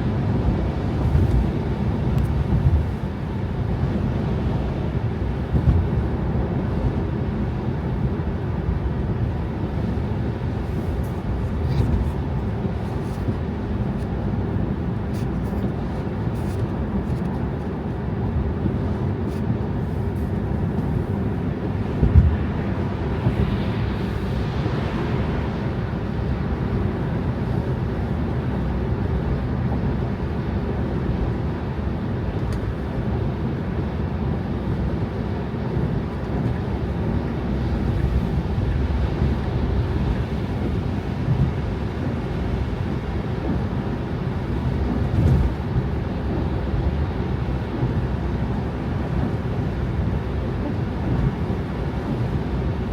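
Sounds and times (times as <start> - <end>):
car tyres and engine rumbling: 0.0 - 52.9.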